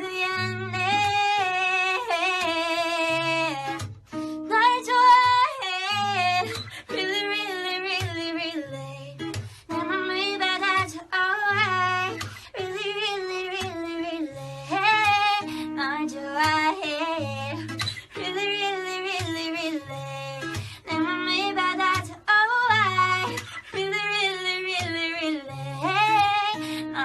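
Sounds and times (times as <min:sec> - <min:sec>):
woman singing: 0:00.0 - 0:27.0.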